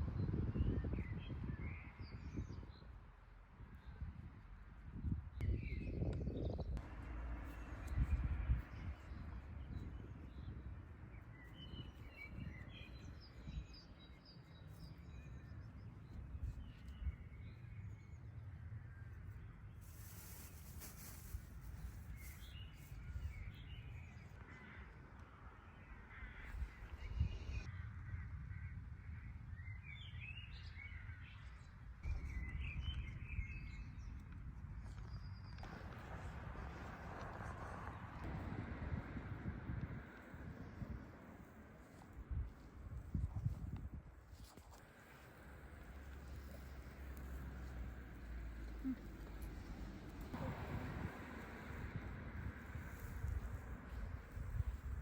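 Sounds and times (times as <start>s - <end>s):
steady low rumble: 4.7s - 14.0s, 32.0s - 44.2s, 45.0s - 55.0s
small birds chirping: 5.4s - 18.4s, 19.0s - 28.2s, 40.0s - 55.0s.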